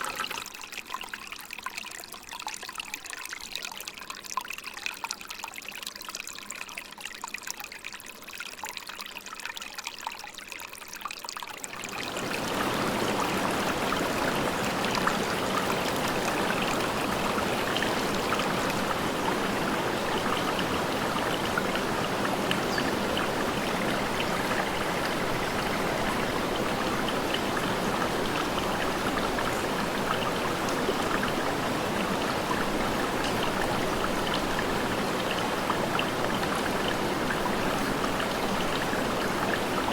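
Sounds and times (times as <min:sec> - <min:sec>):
waterfall pouring: 0:00.0 - 0:01.0
water trickling and splashing: 0:00.0 - 0:39.9.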